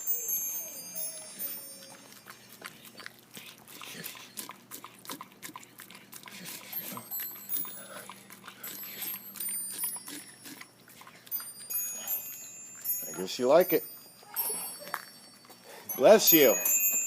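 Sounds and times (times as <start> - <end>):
dog chewing food: 0.1 - 16.0.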